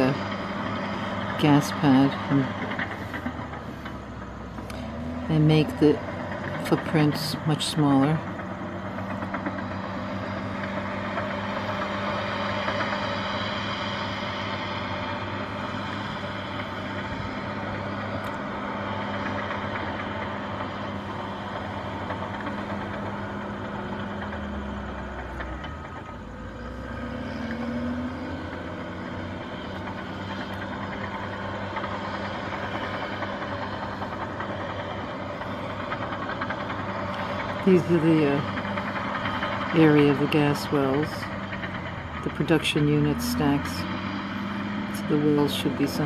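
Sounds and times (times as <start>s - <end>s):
vehicle engines running: 0.0s - 46.0s.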